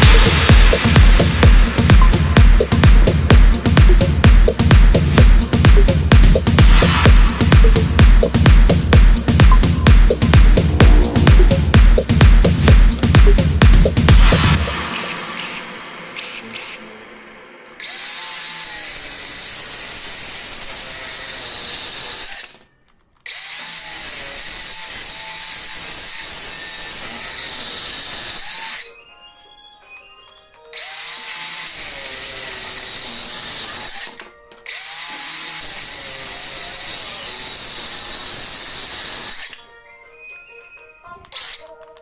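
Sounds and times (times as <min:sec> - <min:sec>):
background music: 0:00.0 - 0:18.6, 0:28.4 - 0:36.9, 0:39.3 - 0:42.0
circular saw cutting wood: 0:14.2 - 0:22.6, 0:23.3 - 0:28.9, 0:30.7 - 0:39.6.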